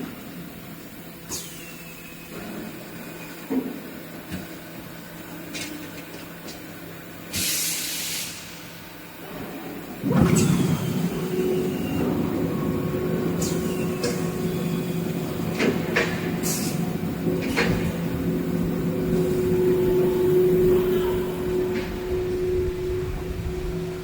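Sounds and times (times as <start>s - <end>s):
air hissing: 7.3s - 8.7s
machine running steadily: 8.3s - 24.0s
low machinery hum: 8.5s - 24.0s.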